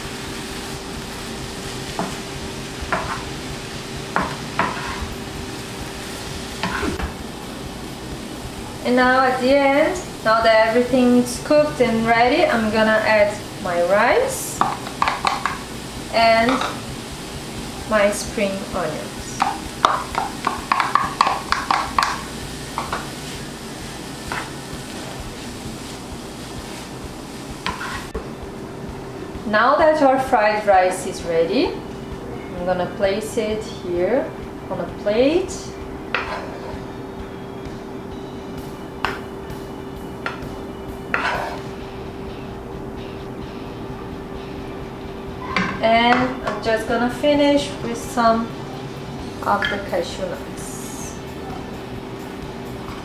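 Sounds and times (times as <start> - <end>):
food sizzling in a pan: 0.0 - 53.0
utensil scraping a pan: 0.8 - 7.2, 18.0 - 28.2, 36.1 - 37.0, 40.3 - 41.8
utensil knocking against pan: 4.2 - 5.1, 14.6 - 15.6, 16.4 - 16.8, 19.4 - 23.1.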